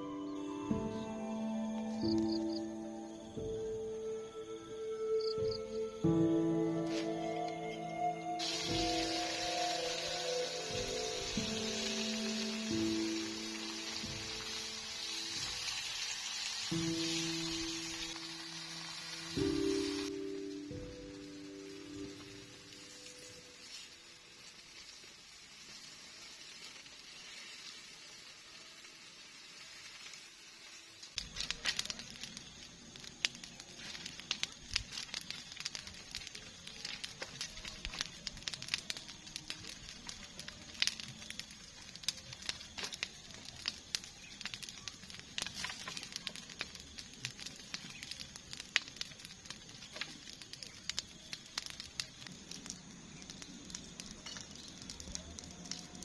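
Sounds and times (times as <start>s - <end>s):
cooking crackling and sizzling: 5.1s - 56.0s.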